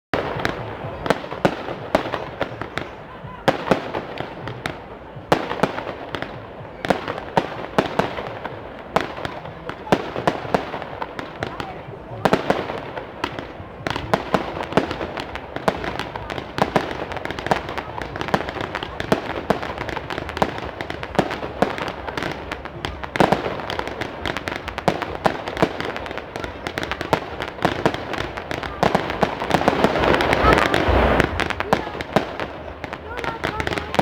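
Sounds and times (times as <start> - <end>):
fireworks bangs and crackles: 0.1 - 34.0.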